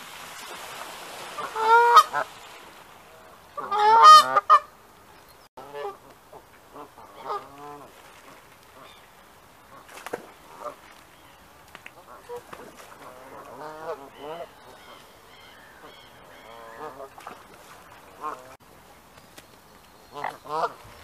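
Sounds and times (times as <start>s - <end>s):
geese honking: 1.4s - 2.3s, 3.5s - 4.7s, 20.2s - 20.8s.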